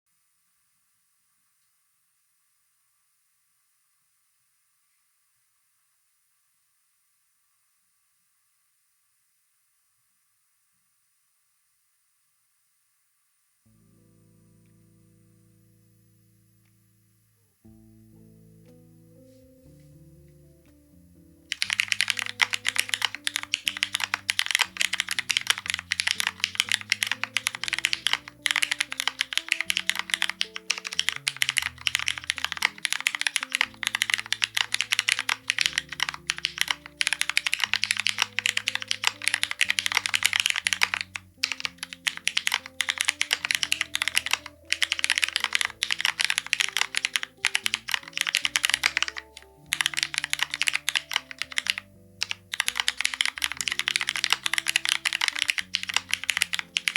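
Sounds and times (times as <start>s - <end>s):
soft background music: 13.7s - 56.9s
fast typing on mechanical keyboard: 21.5s - 56.9s.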